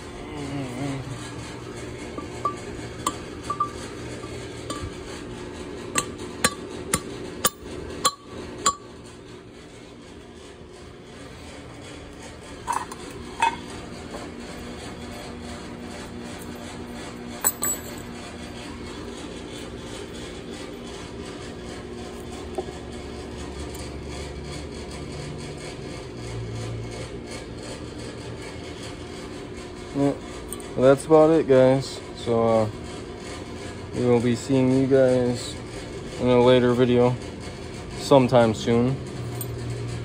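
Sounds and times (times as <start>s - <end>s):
steady background hum: 0.0s - 40.0s
metal clinks: 17.4s - 18.1s.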